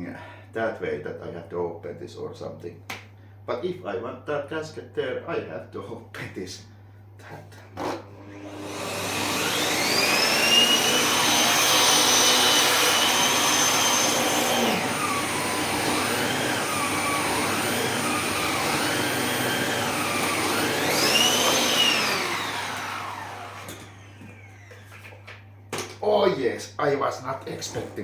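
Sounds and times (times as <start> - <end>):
vacuum cleaner motor whining: 7.8 - 25.2.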